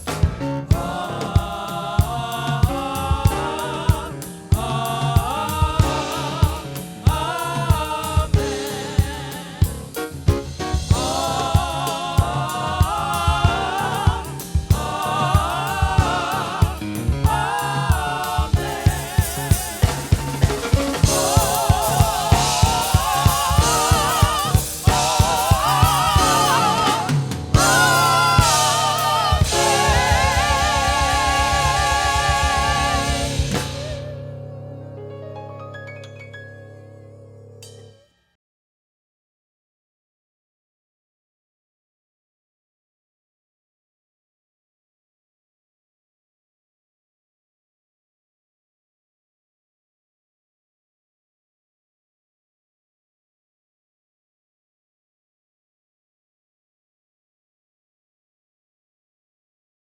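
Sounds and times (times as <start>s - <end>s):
drum kit steady beat: 0.0s - 34.0s
voices singing gospel with vibrato: 0.0s - 37.7s.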